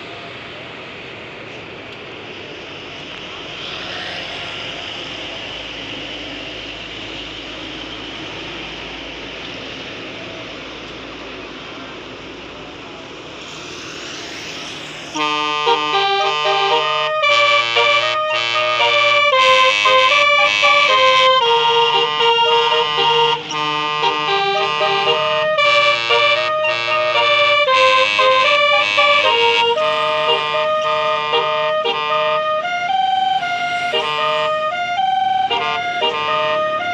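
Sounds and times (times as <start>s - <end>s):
rushing road noise: 0.0s - 36.9s
bus air horn melody: 15.1s - 36.9s.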